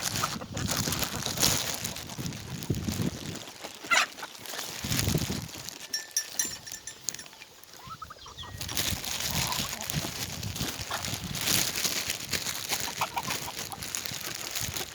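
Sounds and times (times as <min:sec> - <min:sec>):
chickens clucking: 0:00.0 - 0:01.6, 0:03.6 - 0:04.8, 0:05.9 - 0:14.9.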